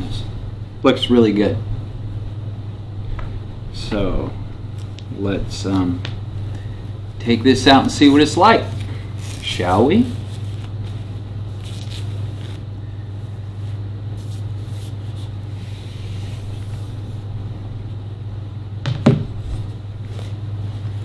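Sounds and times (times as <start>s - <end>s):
steady low hum: 0.0s - 21.0s
cloth rustling: 4.6s - 17.9s, 19.3s - 21.0s.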